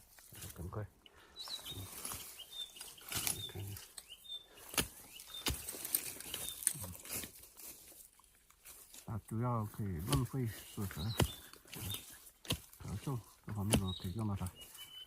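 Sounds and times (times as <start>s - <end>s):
bird chirping: 1.0s - 7.1s, 9.3s - 15.0s
knocks and thuds from digging: 4.7s - 7.2s, 10.0s - 14.3s.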